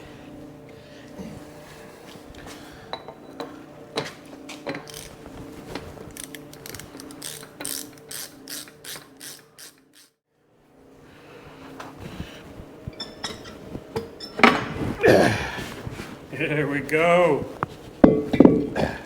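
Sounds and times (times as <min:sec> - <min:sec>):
ratchet wrench clicking: 0:04.8 - 0:05.2, 0:06.1 - 0:10.2.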